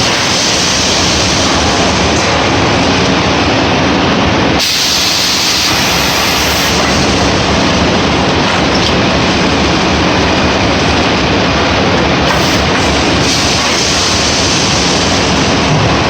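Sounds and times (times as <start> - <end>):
machine hissing: 0.0 - 16.0
packaging machine running: 4.6 - 16.0.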